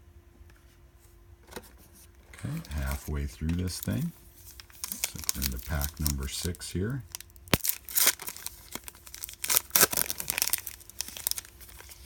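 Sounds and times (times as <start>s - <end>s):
wrapper tearing and crinkling: 2.5s - 12.0s.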